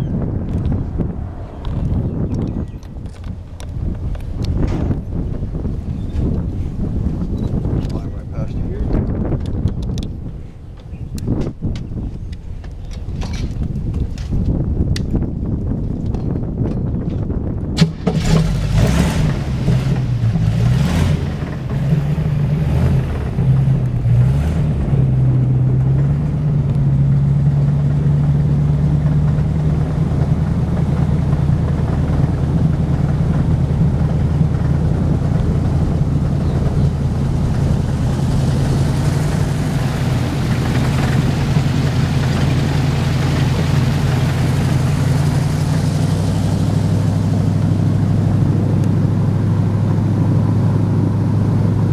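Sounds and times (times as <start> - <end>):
airboat engine revving: 17.7 - 51.9.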